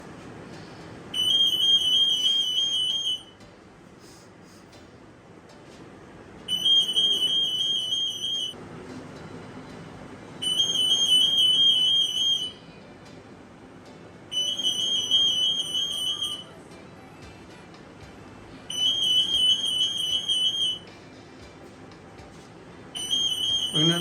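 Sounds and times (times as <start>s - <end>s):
security gate alarm beeping: 1.1s - 3.4s, 6.5s - 8.6s, 10.4s - 12.6s, 14.3s - 16.6s, 18.7s - 20.9s, 22.9s - 24.0s.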